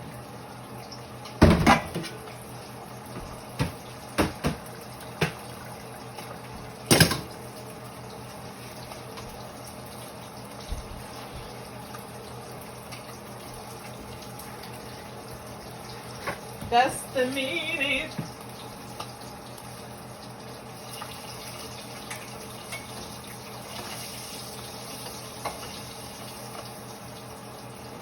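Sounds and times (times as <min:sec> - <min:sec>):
tap water running: 0:00.0 - 0:28.0
kitchenware knocks and clatters: 0:01.4 - 0:02.2, 0:03.2 - 0:05.4, 0:06.9 - 0:07.3.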